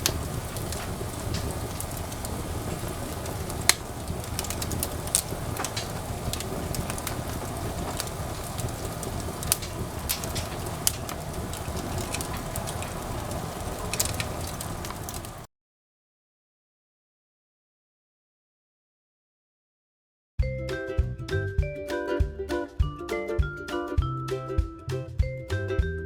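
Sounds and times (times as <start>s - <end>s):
wood fire crackling: 0.0s - 15.5s.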